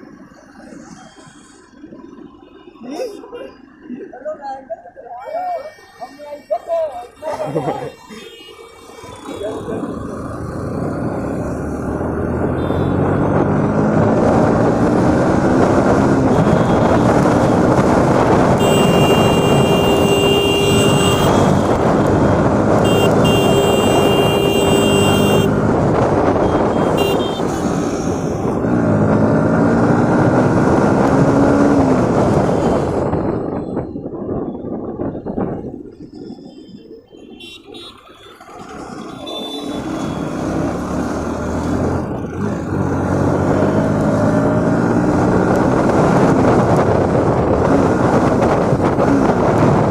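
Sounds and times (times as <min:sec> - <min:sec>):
wind and road noise: 0:00.0 - 0:49.9
motorcycle engine accelerating: 0:09.0 - 0:33.4, 0:38.4 - 0:49.9.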